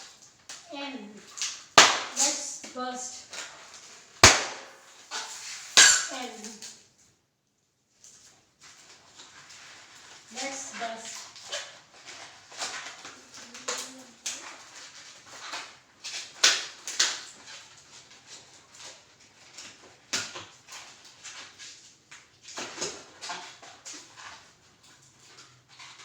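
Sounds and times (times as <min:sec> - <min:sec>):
balloons popping: 0:01.8 - 0:02.4, 0:04.2 - 0:04.8, 0:05.8 - 0:06.2
balloons squeaking and rustling: 0:03.3 - 0:06.7, 0:08.1 - 0:22.5.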